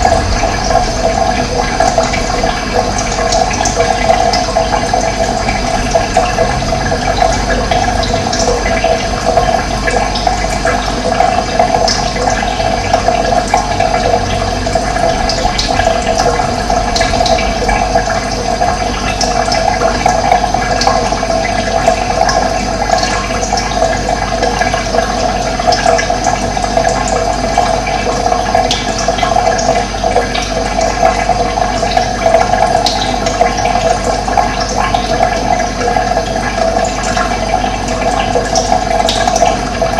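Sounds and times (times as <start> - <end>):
running water rushing: 0.0 - 39.9.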